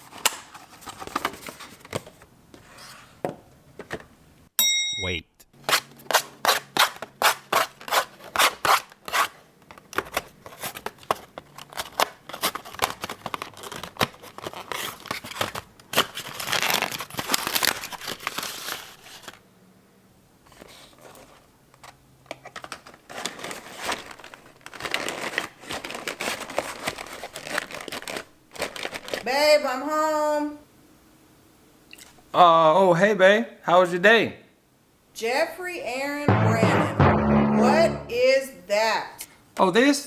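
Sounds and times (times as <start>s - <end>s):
paper crinkling and tearing: 10.4s - 19.4s, 22.8s - 29.2s.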